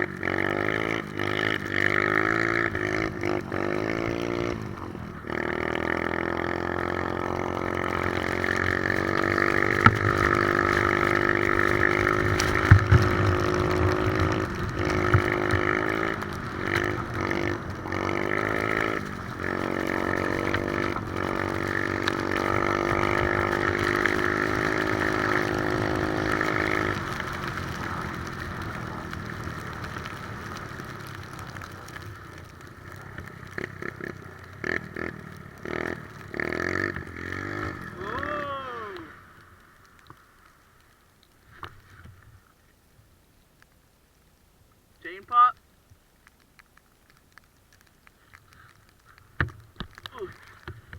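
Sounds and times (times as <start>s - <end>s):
atv engine revving: 0.0s - 40.2s.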